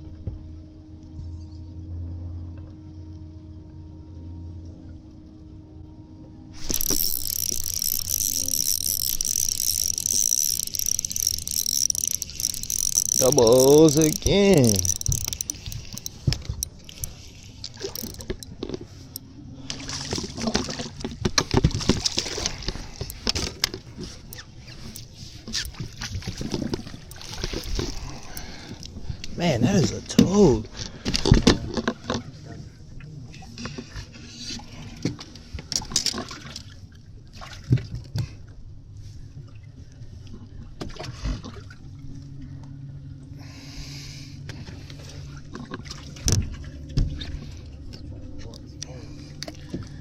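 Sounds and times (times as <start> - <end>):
steady low hum: 0.0 - 37.7
water splashing and sloshing: 6.5 - 50.0
sharp knocks and clicks: 6.7 - 17.1.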